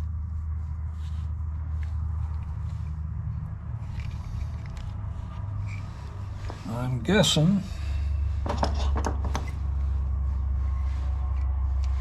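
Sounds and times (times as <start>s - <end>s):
steady low hum: 0.0s - 12.0s
hand tools clicking and scraping: 1.6s - 7.0s, 8.4s - 9.9s, 10.6s - 12.0s.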